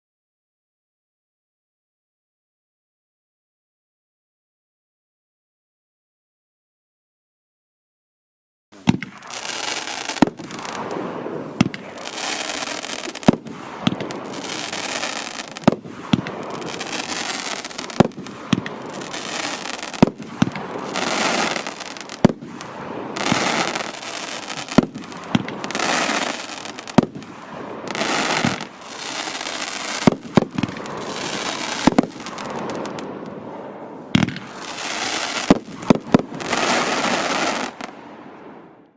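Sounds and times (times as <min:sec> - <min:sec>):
firework launch bangs: 0:08.8 - 0:33.4, 0:34.1 - 0:38.0
firework crackling: 0:08.8 - 0:38.6.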